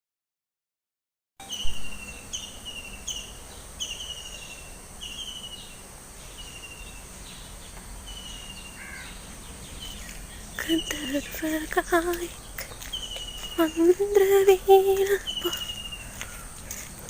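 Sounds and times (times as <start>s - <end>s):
bird whistled call: 1.4s - 5.8s
high-pitched insect drone: 1.4s - 17.0s.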